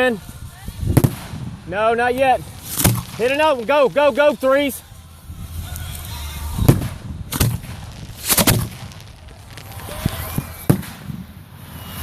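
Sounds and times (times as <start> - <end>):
fireworks banging: 0.0 - 12.0
small firework pops: 1.0 - 1.5, 2.2 - 3.8, 5.7 - 12.0
low rumble: 4.8 - 10.7.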